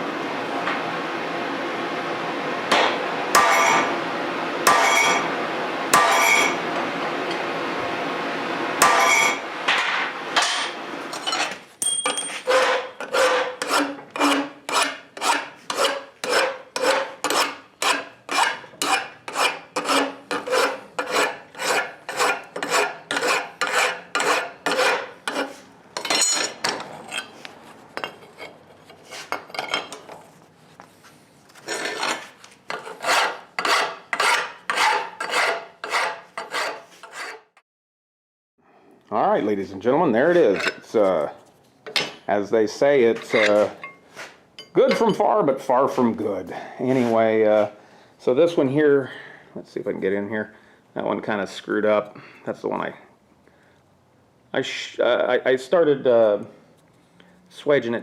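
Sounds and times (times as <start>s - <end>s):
hand file stroking on steel: 12.4s - 25.7s, 31.7s - 37.5s.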